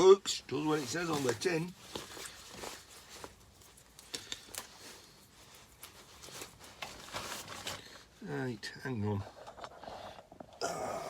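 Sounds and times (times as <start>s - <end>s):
light scraping of cable: 9.1s - 10.6s.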